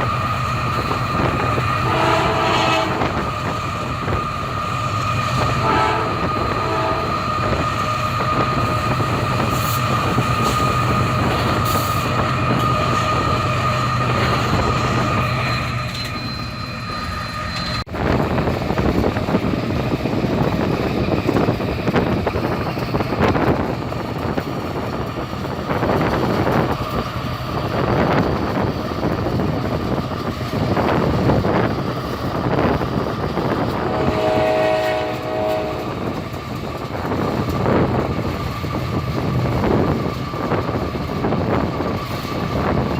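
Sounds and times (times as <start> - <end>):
train mechanical whine: 0.0 - 42.9
train wheels clattering over track: 0.0 - 42.9
train horn blast: 1.8 - 3.2, 5.5 - 7.3, 33.7 - 36.2.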